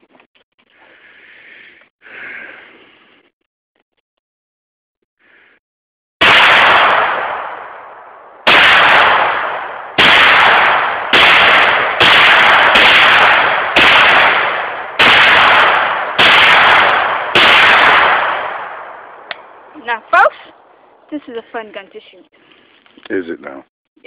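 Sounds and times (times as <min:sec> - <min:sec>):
gunshots with echo: 0:06.2 - 0:19.6.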